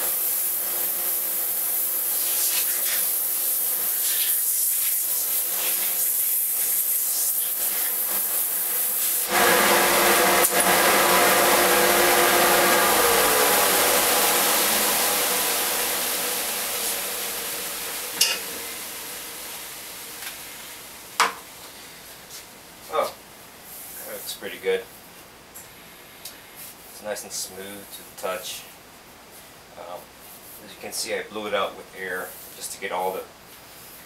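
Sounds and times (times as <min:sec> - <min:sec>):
compressed air hissing: 0:12.4 - 0:20.8
soft hiss: 0:16.0 - 0:34.0.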